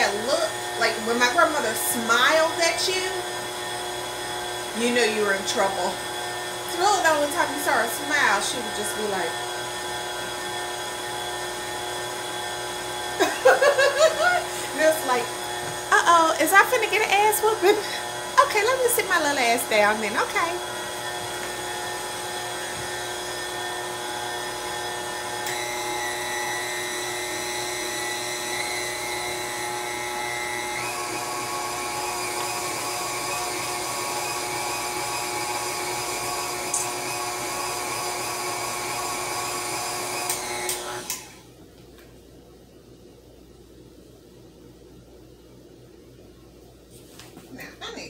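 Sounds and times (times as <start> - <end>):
stand mixer motor whining: 0.0 - 41.6
mixer clicks: 30.8 - 37.4, 40.0 - 41.4.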